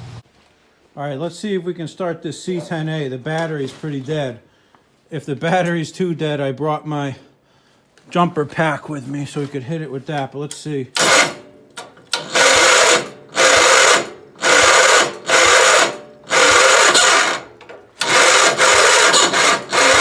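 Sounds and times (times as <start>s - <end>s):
tractor engine cranking: 10.5s - 20.0s.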